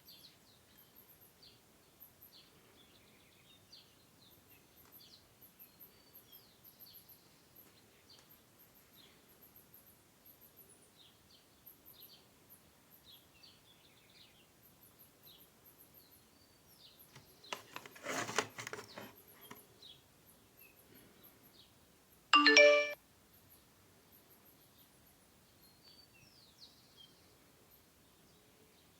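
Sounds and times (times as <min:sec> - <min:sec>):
faint high chirping: 0:22.4 - 0:23.0.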